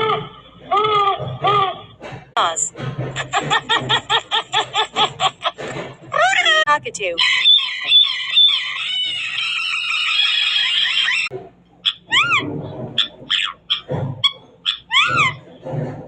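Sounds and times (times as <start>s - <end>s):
cockatoo screeching: 0.0s - 1.9s, 7.2s - 15.5s.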